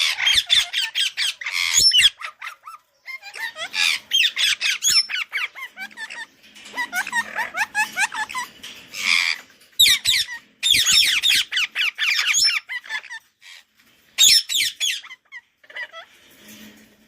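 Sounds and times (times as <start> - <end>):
budgerigar chirping and warbling: 0.0 - 13.6.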